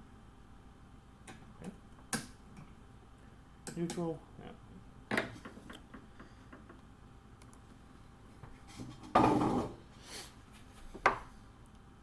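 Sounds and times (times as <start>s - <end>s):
rustle or clatter on workbench: 8.5s - 9.8s.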